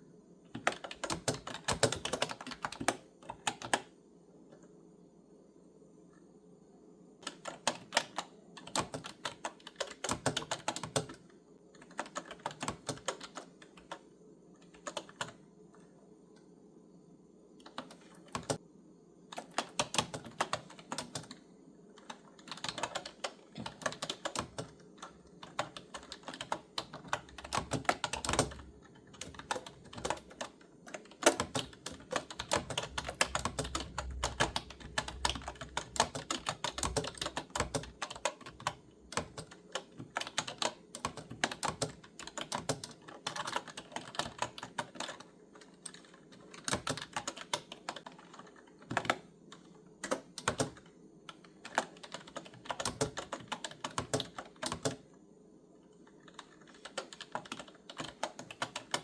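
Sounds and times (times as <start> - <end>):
clicky keyboard typing: 0.5 - 4.7, 7.2 - 16.5, 17.6 - 18.6, 19.3 - 21.4, 22.0 - 55.1, 55.9 - 59.0.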